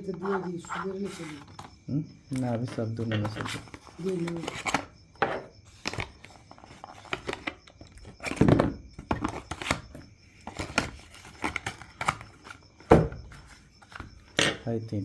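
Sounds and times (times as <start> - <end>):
small objects clicking and rustling: 2.3 - 4.9.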